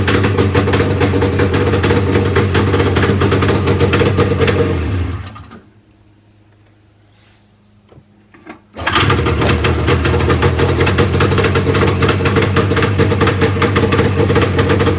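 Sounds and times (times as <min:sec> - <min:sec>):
snowmobile engine starting and running: 0:00.0 - 0:05.7, 0:08.7 - 0:14.9.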